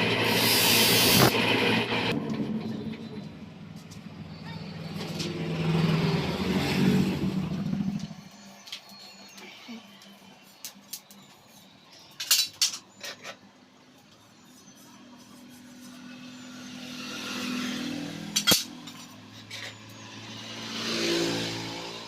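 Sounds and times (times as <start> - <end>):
vehicle passing: 2.2 - 8.2, 15.3 - 22.0.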